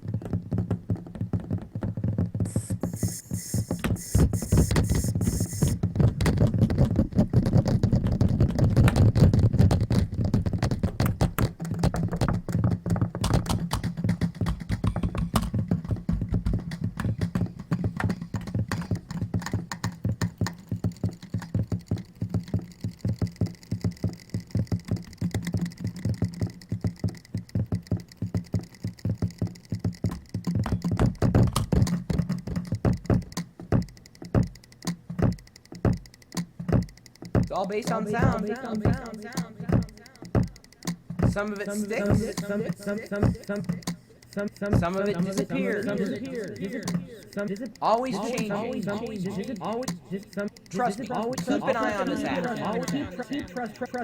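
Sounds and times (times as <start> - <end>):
stuttering rhythmic clicks: 0.0 - 54.0
burst of hiss: 2.5 - 5.8.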